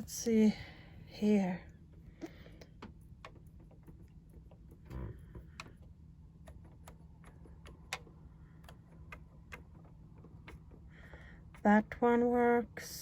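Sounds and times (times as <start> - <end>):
faint low hum: 0.0 - 13.0
accordion keys clicking: 2.2 - 11.8.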